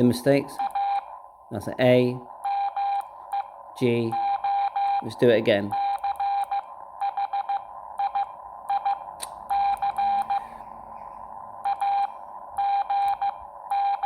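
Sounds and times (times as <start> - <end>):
morse code beeps: 0.5 - 1.2, 2.4 - 5.1, 5.7 - 10.6, 11.6 - 14.0.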